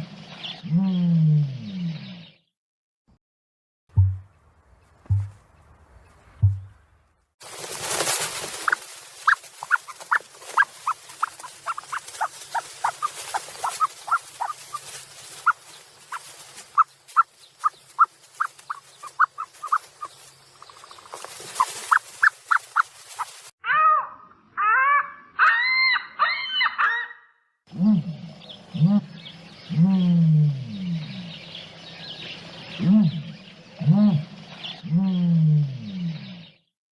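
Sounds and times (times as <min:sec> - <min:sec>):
rising and falling animal calls: 0:08.5 - 0:29.1.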